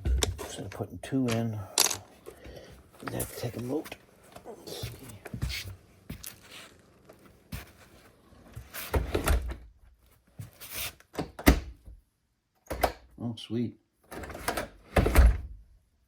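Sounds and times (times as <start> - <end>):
door shutting: 14.2 - 15.5.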